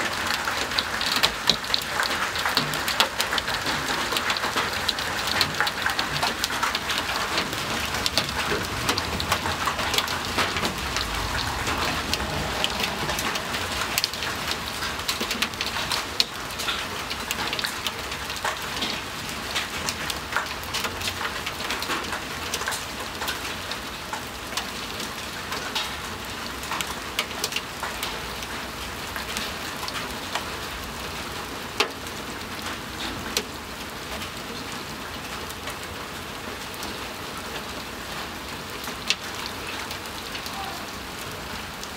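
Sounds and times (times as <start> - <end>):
heavy rain hissing: 0.0 - 17.0.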